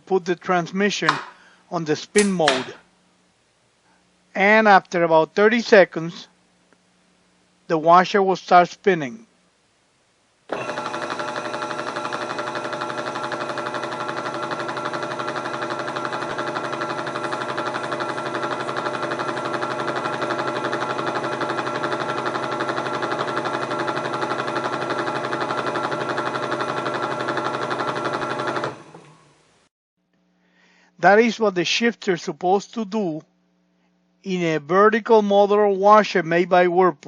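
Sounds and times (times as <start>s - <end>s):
washer motor whirring: 10.5s - 29.5s.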